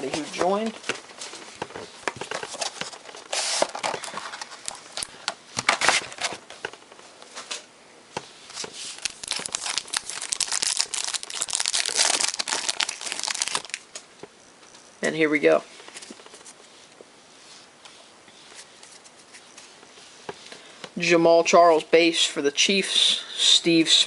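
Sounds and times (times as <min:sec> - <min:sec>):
plastic wrapping crinkling and tearing: 0:08.8 - 0:14.0.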